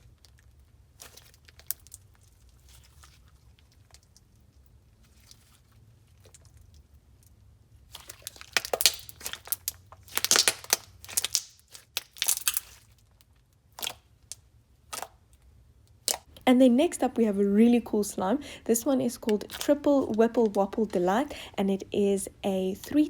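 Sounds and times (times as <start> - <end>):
slime crackling and popping: 0.0 - 4.4, 6.1 - 16.4, 19.1 - 21.0.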